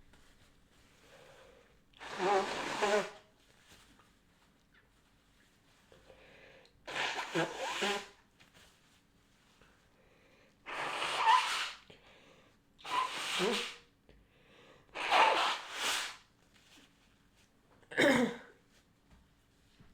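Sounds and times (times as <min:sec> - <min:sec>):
woman blowing her nose: 0:02.0 - 0:03.3, 0:06.8 - 0:08.2, 0:10.7 - 0:11.9, 0:12.8 - 0:13.9, 0:14.9 - 0:16.3.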